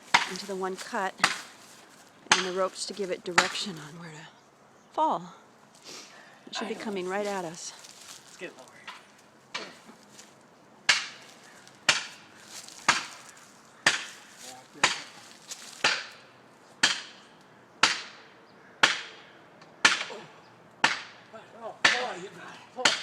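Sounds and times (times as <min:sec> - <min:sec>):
hammer striking wedge: 0:02.3 - 0:02.6, 0:16.8 - 0:17.2, 0:20.8 - 0:21.2.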